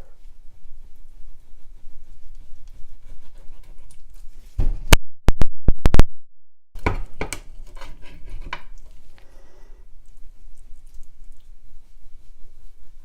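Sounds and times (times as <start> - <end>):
knife scraping and cutting chicken: 7.2 - 9.0.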